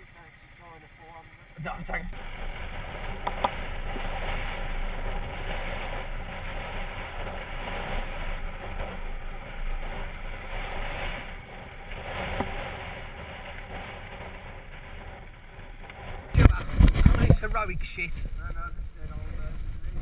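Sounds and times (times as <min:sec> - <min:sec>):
vehicle rushing noise: 0:02.1 - 0:18.4.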